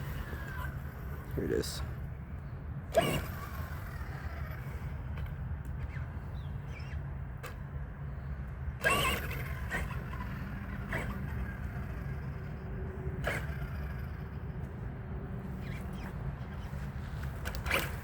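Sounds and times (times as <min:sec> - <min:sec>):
camera handling rumble: 0:15.5 - 0:18.0.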